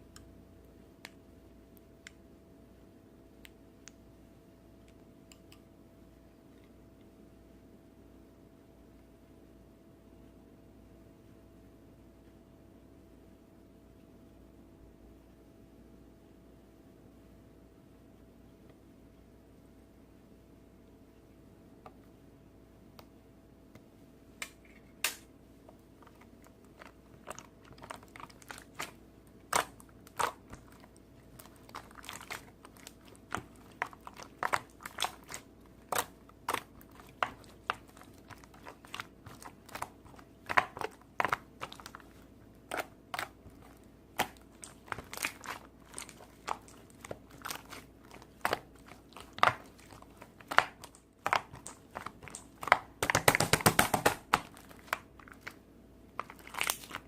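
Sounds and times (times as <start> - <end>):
crunchy slime crackling: 25.8 - 57.0.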